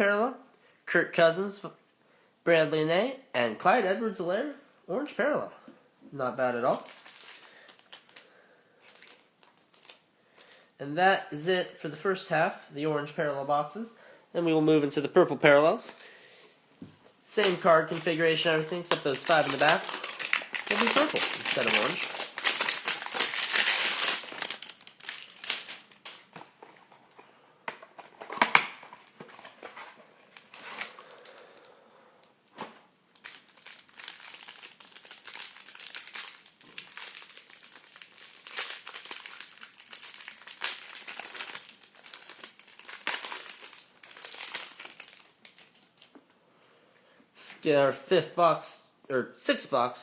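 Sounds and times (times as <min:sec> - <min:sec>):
packaging crinkling and rustling: 0:06.7 - 0:10.6, 0:17.3 - 0:27.3, 0:27.9 - 0:31.7, 0:32.5 - 0:46.2.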